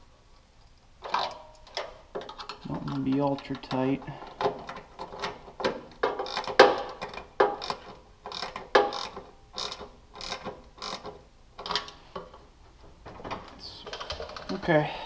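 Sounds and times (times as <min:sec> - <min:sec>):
ratchet wrench clicking: 0:06.2 - 0:11.8.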